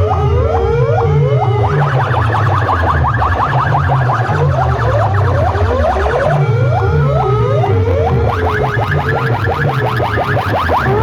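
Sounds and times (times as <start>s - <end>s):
electronic siren sweeps: 0.0s - 11.0s
heavy pulsing bass: 0.0s - 11.0s.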